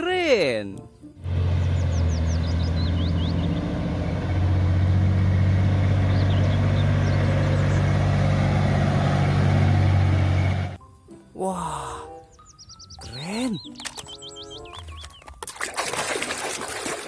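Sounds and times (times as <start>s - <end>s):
birds chirping: 0.9s - 15.4s.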